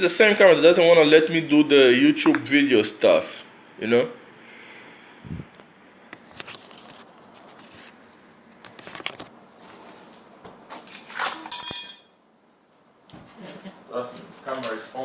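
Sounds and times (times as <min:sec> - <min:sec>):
metallic clink with ringing: 0:11.5 - 0:12.2.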